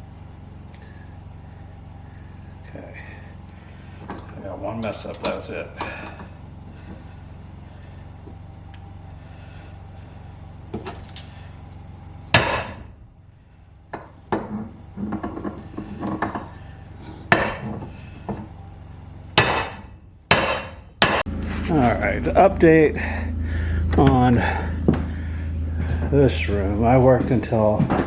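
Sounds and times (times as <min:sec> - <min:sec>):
steady low hum: 0:00.0 - 0:28.0
sharp knocks: 0:12.4 - 0:12.9, 0:17.3 - 0:17.9, 0:19.4 - 0:21.3.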